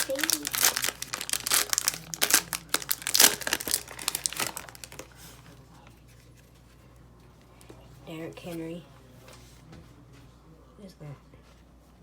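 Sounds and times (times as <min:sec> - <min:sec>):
plastic wrapper crinkling and tearing: 0:00.0 - 0:05.2.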